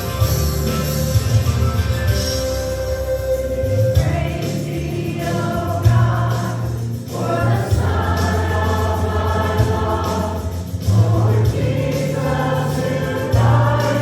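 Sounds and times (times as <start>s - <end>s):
held bass notes: 0.0s - 14.0s
congregation singing: 3.0s - 14.0s.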